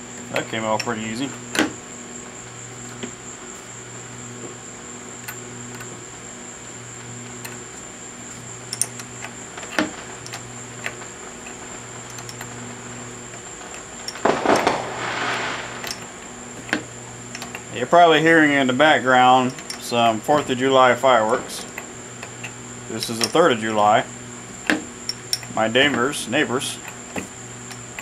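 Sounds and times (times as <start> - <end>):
electrical hum: 0.0 - 28.0
fireworks crackling: 13.5 - 21.6
metal parts and tools clinking: 21.6 - 23.6.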